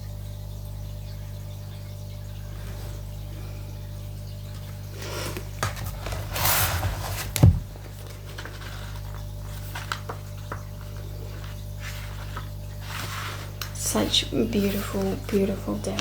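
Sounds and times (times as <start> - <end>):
steady low hum: 0.0 - 16.0
cards rustling: 5.1 - 16.0.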